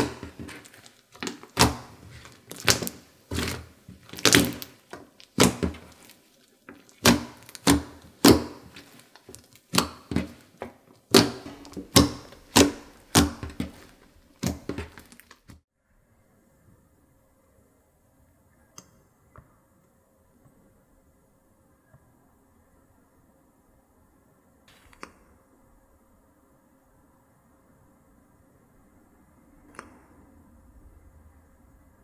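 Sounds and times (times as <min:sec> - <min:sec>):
slime clicking and popping: 0:00.0 - 0:15.5.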